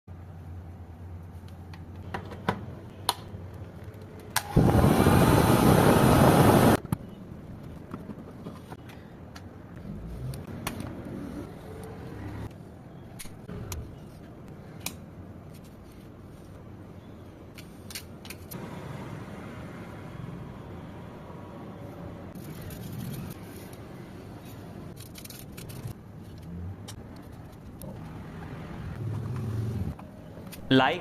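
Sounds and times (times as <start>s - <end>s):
hair dryer blowing: 4.4s - 6.8s.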